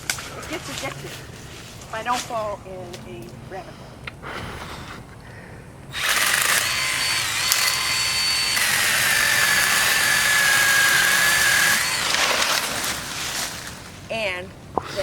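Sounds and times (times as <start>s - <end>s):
small chainsaw cutting branch: 5.9s - 14.0s.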